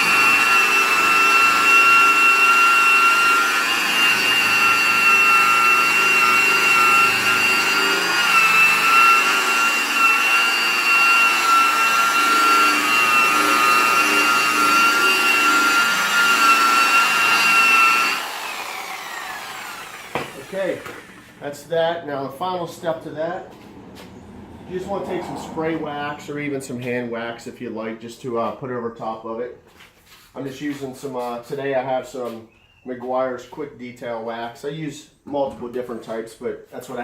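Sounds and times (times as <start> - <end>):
electric buffer motor whine: 0.0 - 21.6.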